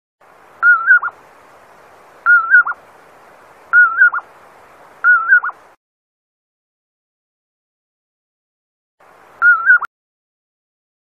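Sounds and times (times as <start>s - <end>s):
faint steady hiss: 0.2s - 5.8s, 9.0s - 9.7s
nocturnal bird whistled call: 0.6s - 1.2s, 2.2s - 2.8s, 3.7s - 4.3s, 5.0s - 5.6s, 9.4s - 9.9s.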